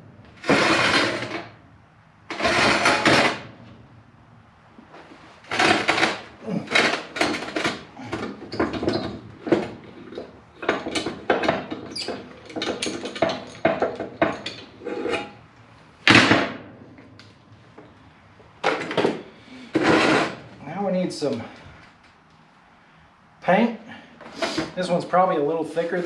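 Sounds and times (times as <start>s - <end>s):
hand tools scraping and knocking steel: 0.4s - 1.6s, 2.3s - 3.5s, 4.9s - 15.4s, 18.6s - 20.5s, 24.2s - 25.0s.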